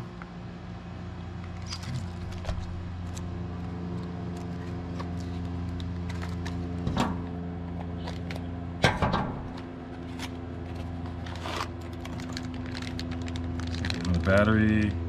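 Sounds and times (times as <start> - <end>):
steady low hum: 0.0 - 15.0
packaging rustling and clicking: 9.5 - 14.9.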